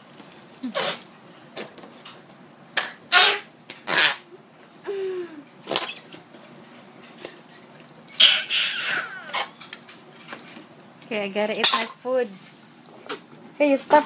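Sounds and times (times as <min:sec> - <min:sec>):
slime putty fart noises: 0:00.6 - 0:01.0, 0:02.8 - 0:04.3, 0:05.6 - 0:06.0.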